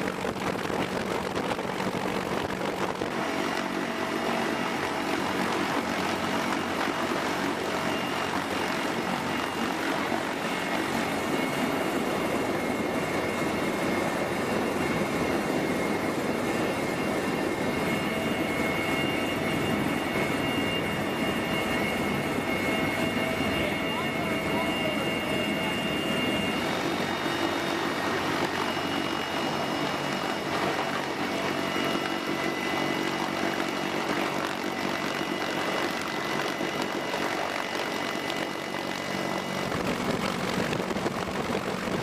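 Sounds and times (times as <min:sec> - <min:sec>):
helicopter engine whine: 0:00.0 - 0:42.0
helicopter rotors rumbling: 0:00.0 - 0:42.0.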